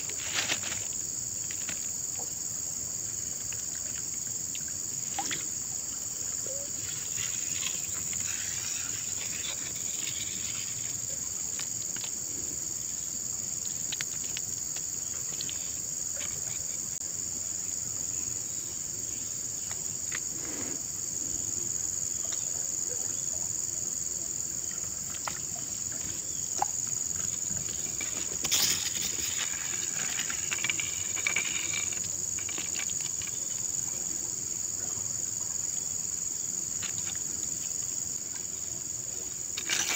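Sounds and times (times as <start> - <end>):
high-pitched insect chorus: 0.0 - 39.9.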